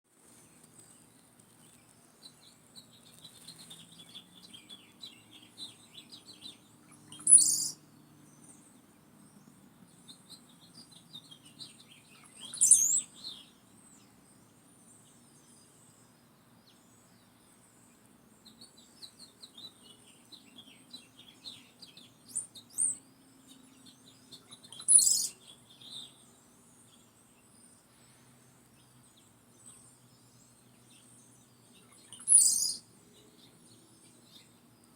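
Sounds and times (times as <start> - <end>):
songbirds chattering: 0.2 - 34.9
sharp bird calls: 1.8 - 8.8, 9.4 - 13.9, 18.4 - 27.0, 31.7 - 34.6.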